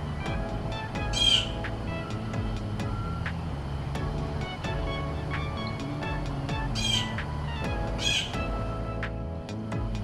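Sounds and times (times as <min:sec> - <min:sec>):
background music: 0:00.0 - 0:10.0
blue jay harsh call: 0:01.1 - 0:01.6, 0:06.8 - 0:07.1, 0:08.0 - 0:08.4.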